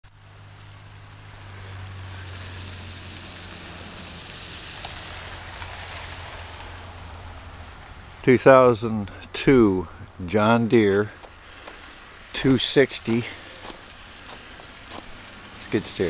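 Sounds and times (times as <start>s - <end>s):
rushing noise: 0.4s - 8.3s.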